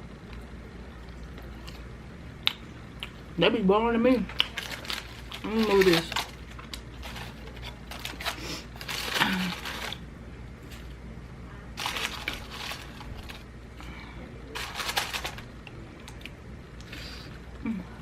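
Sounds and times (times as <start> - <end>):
chewing crunchy fried food: 4.3 - 11.0.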